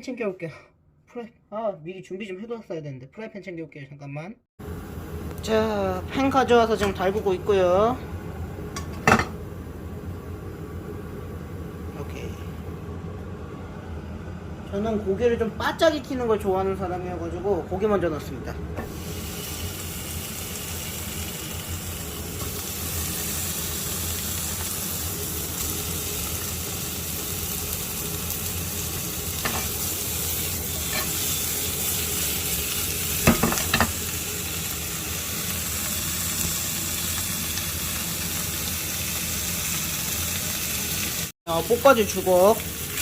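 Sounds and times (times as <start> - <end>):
pork sizzling in a frying pan: 8.7 - 9.8, 18.8 - 43.0.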